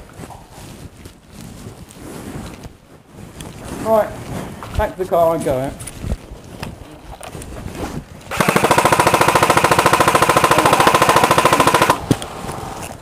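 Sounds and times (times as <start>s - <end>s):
airsoft gun full-auto burst: 8.3s - 12.1s.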